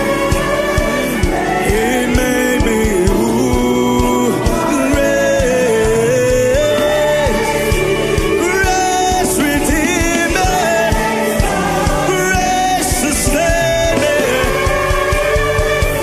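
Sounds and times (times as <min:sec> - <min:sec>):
drums keeping a steady beat: 0:00.0 - 0:16.0
gospel choir singing: 0:00.0 - 0:16.0.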